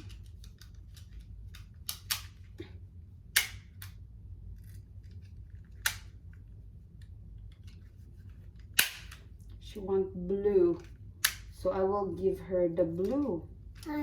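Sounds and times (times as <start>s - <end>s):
sharp plastic clicks: 0.0s - 2.4s, 8.6s - 9.3s.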